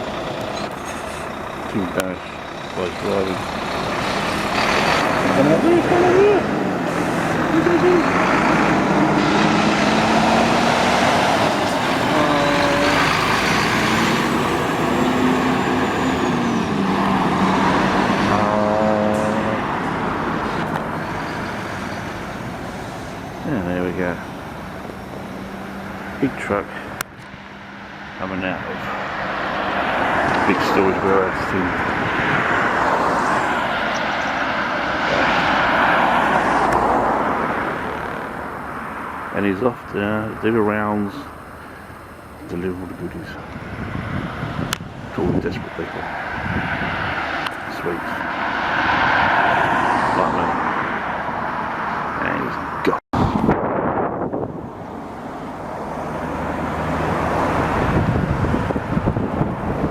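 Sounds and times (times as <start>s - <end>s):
truck engine running: 0.0s - 48.4s
lorry driving past: 0.0s - 59.9s
wind on microphone: 43.4s - 47.7s, 53.2s - 55.0s, 55.6s - 59.9s.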